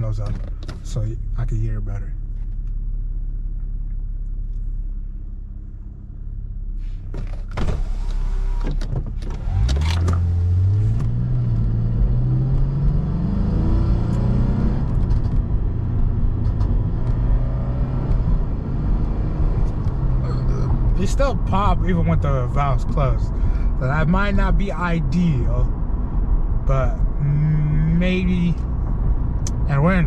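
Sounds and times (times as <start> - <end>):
car engine rumble from inside: 0.0 - 30.0
engine note rising under acceleration: 9.4 - 21.0.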